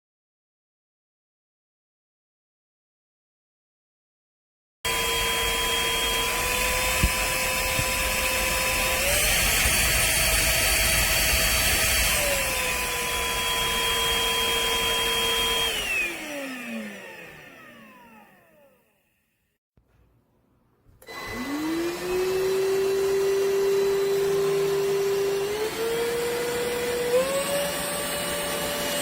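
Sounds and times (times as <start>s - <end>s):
stick vacuum motor whining: 4.9s - 18.9s, 21.0s - 29.0s.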